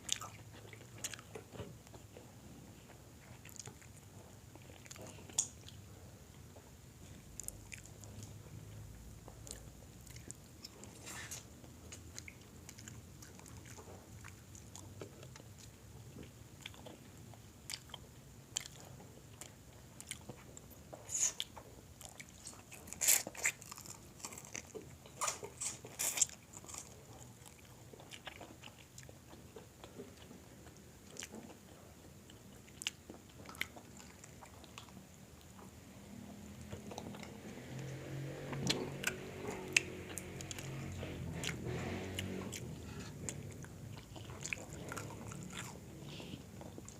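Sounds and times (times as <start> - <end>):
person chewing crispy chicken: 21.0 - 35.7, 36.6 - 46.9.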